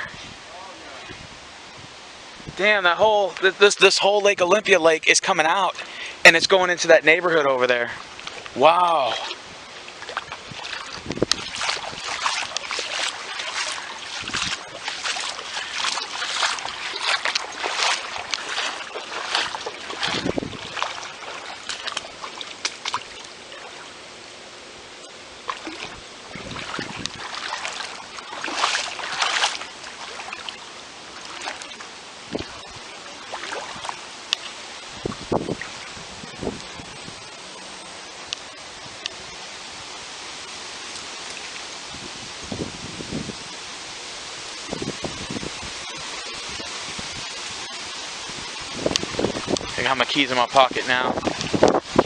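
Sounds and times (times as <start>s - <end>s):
floodwater splashing and sloshing: 7.3s - 52.0s
dull low thumps: 14.1s - 21.1s.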